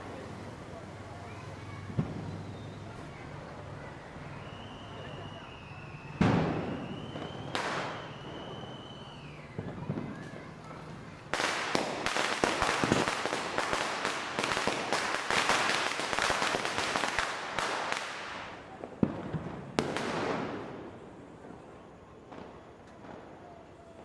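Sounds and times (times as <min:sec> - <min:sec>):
firecrackers crackling: 0:00.0 - 0:24.0
sharp firecracker bang: 0:04.4 - 0:20.9.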